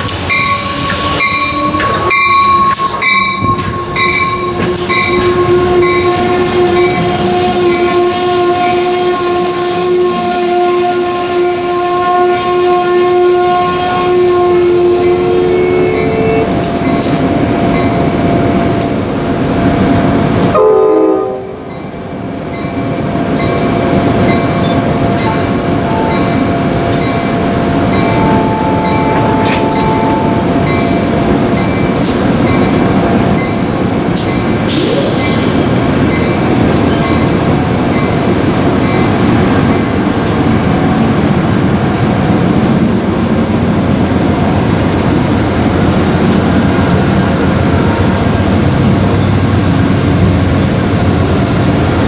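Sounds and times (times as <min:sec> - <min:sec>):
passing train rumble: 0:00.0 - 0:52.0
locomotive air horn chord: 0:00.3 - 0:16.8, 0:20.5 - 0:21.6, 0:25.2 - 0:31.2.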